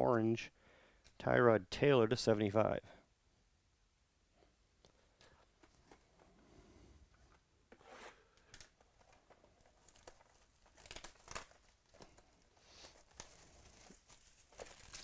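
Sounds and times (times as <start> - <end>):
cards rustling: 7.9 - 15.0
foil wrappers crinkling and tearing: 8.4 - 15.0.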